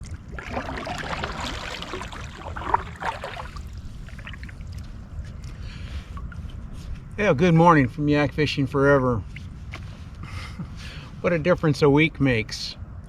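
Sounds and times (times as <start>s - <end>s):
water splashing around kayak: 0.0s - 7.0s
steady low rumble: 0.0s - 13.0s.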